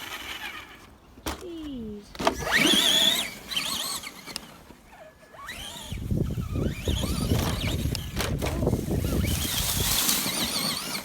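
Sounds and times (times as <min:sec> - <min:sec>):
electric motor whining: 0:02.4 - 0:11.0
tyres rumbling over rough ground: 0:05.5 - 0:11.0.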